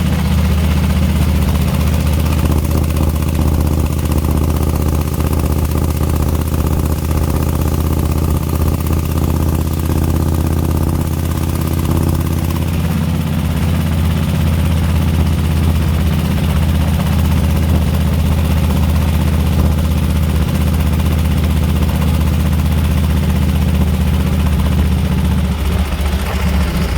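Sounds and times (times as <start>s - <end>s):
engine ticking: 0.0s - 26.9s
motorcycle engine idling: 0.0s - 26.9s.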